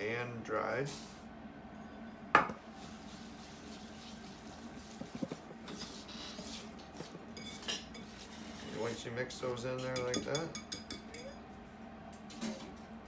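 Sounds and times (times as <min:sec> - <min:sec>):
soft scraping and stirring: 0:01.8 - 0:11.7
knock against mixing bowl: 0:02.4 - 0:02.6.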